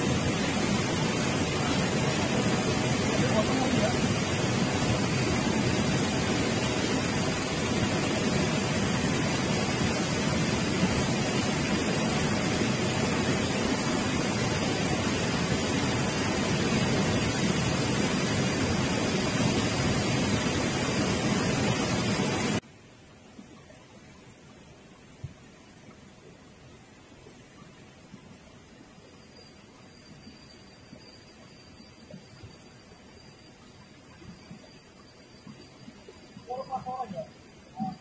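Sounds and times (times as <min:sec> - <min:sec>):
river water rushing: 0:00.0 - 0:22.6.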